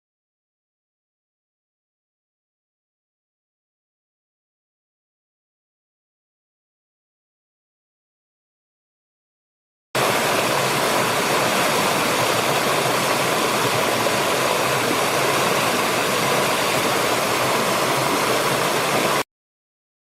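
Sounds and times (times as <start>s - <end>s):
waterfall rushing: 10.0s - 19.2s.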